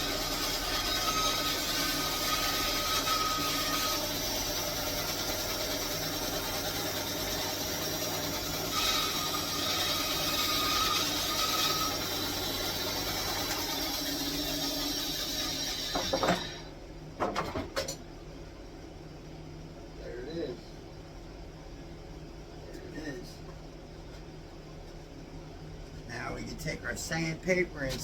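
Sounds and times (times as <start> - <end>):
bandsaw running: 0.0 - 16.6
bandsaw whine cutting wood: 0.0 - 16.7.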